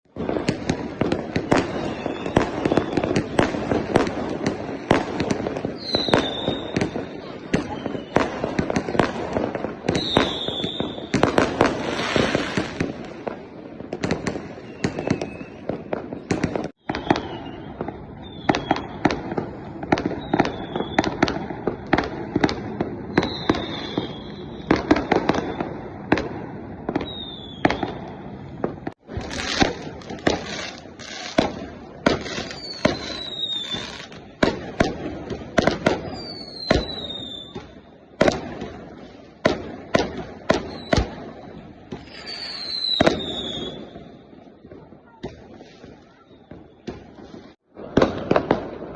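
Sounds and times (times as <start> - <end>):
fireworks crackling: 0.0 - 48.9
firework bangs: 0.1 - 48.9
falling firework whistles: 0.2 - 13.4, 14.0 - 22.0, 22.7 - 26.2, 26.9 - 34.2, 36.0 - 37.8, 40.6 - 41.2, 41.9 - 44.4.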